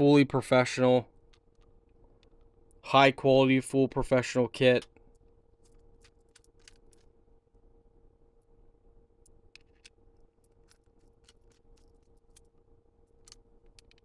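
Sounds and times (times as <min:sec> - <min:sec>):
faint steady hum: 0:00.0 - 0:14.0
case parts clicking: 0:05.6 - 0:07.1, 0:09.2 - 0:12.5, 0:13.1 - 0:14.0.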